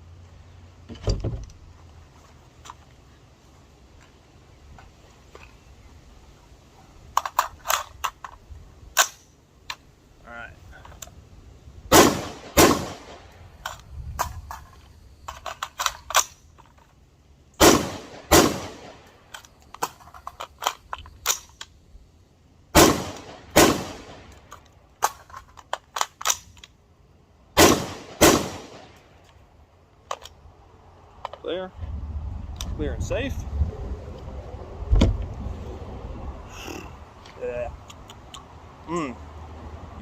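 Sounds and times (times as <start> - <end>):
rifle gunshots: 11.9 - 13.3, 17.6 - 19.1, 22.8 - 24.3, 27.6 - 29.0.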